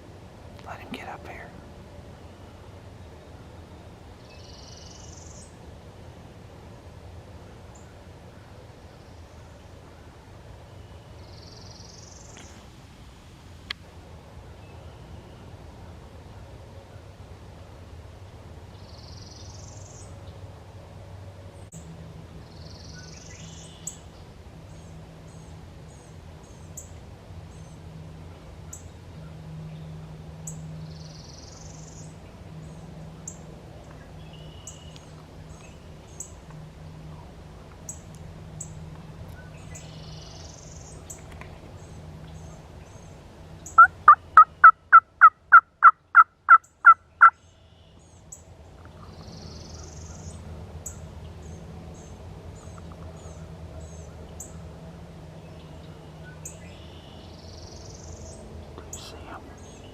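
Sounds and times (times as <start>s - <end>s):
distant songbird phrases: 0.6s - 5.7s, 7.7s - 12.7s, 18.6s - 20.5s, 22.3s - 45.0s, 45.8s - 59.9s
turkey yelps: 43.8s - 47.3s.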